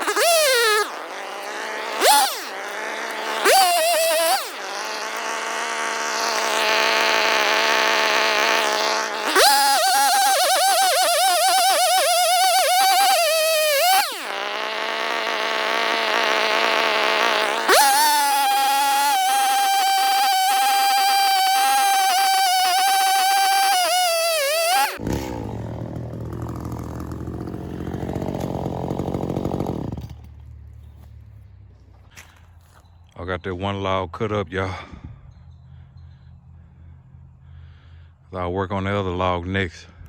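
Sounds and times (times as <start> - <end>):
chainsaw cutting log: 0.0 - 30.6.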